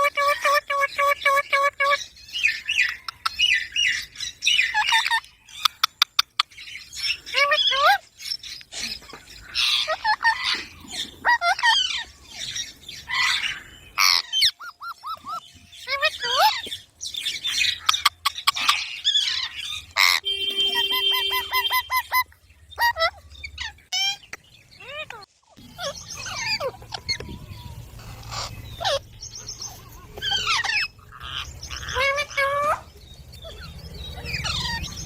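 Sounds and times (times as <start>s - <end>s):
parrot chirping and squawking: 0.0s - 35.0s
steady tone: 20.2s - 22.1s.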